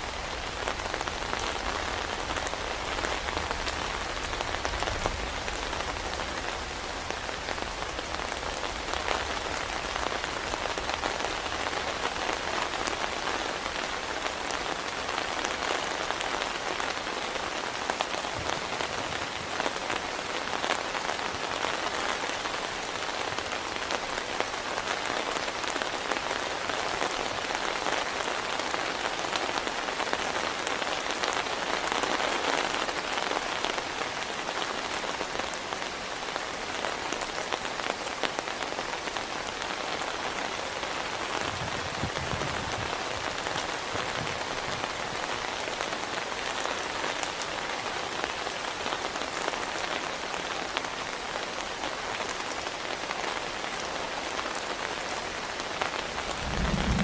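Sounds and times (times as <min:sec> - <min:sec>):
heavy rain falling: 0:00.0 - 0:57.0
low rumble: 0:56.2 - 0:57.0.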